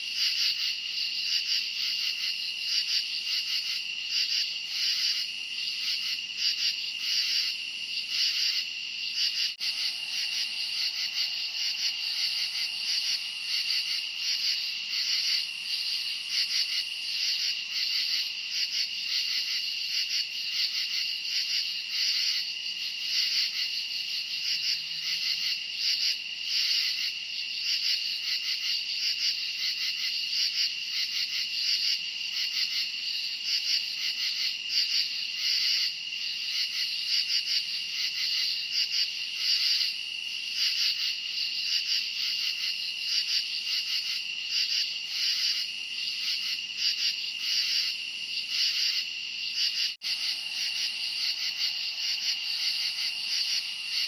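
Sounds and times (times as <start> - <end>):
crickets trilling: 0.1 - 24.0, 32.3 - 54.0
pulsing cricket chirps: 0.2 - 21.0, 36.2 - 54.0.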